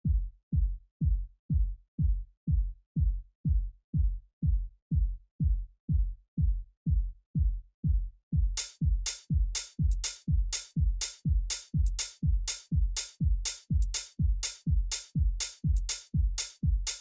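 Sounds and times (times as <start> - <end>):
kick drum thumps: 0.0 - 17.0
hi-hat and clap hits: 8.6 - 17.0.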